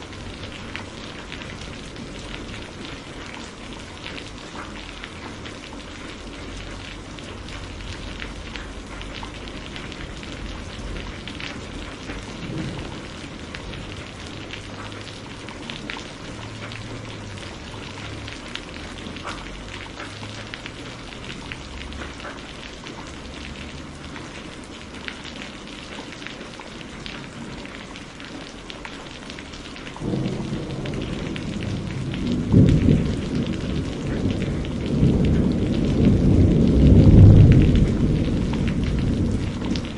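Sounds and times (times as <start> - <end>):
thunder rumbling: 0.0 - 22.2, 29.6 - 39.9
steady rain falling: 0.0 - 39.9.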